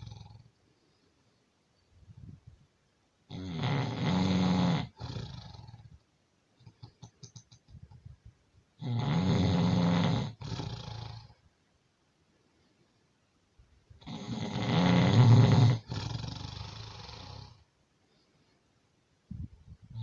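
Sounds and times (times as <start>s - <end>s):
faint clicking breath sounds: 0.0s - 2.8s, 12.2s - 14.0s, 16.6s - 20.0s
person snoring: 3.3s - 5.8s, 8.8s - 11.3s, 14.0s - 17.6s.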